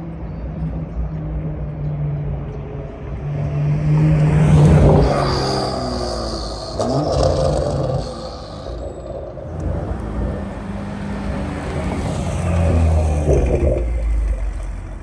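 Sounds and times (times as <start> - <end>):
car exhaust revving: 3.6 - 15.0.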